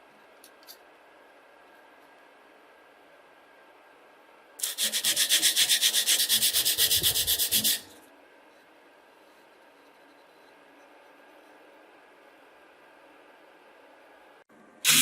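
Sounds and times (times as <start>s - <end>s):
rapid scraping strokes: 4.6s - 7.9s.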